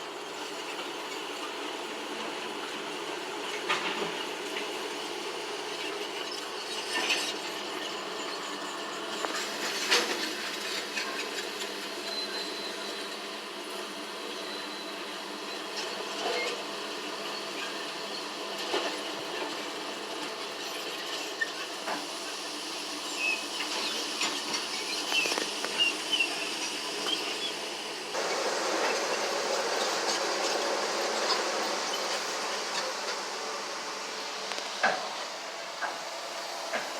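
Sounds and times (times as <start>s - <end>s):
heavy machinery running: 23.5s - 36.9s.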